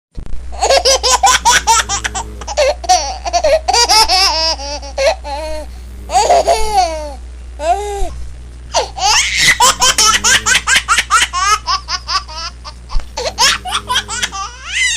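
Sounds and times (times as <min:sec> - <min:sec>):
low hum: 0:00.2 - 0:14.9
high-pitched squealing laughter: 0:09.0 - 0:12.6.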